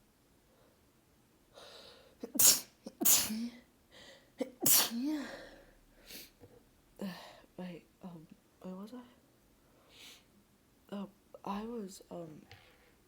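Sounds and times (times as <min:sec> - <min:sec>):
person sneezing: 0:02.2 - 0:03.6, 0:04.4 - 0:05.5.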